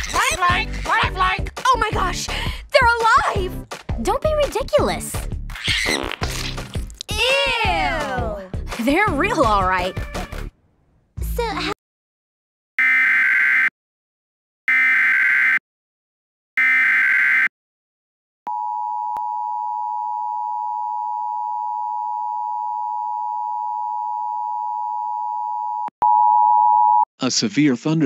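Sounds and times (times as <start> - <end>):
long steady attention tone: 18.5 - 27.0.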